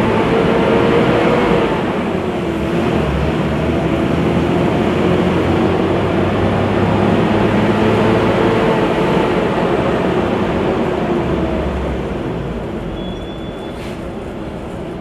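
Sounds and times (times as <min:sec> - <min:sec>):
bus diesel engine running: 0:00.0 - 0:15.0
brief high tone: 0:13.0 - 0:13.9.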